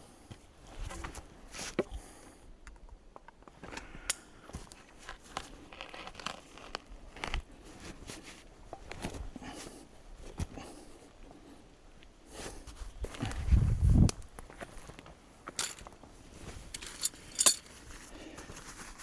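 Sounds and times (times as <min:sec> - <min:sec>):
crunches and snaps of handling: 0:02.8 - 0:09.3.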